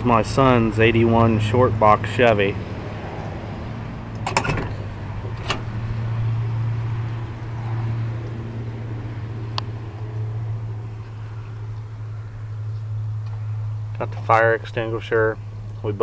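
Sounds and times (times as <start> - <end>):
pickup truck engine idling: 0.0 - 16.0.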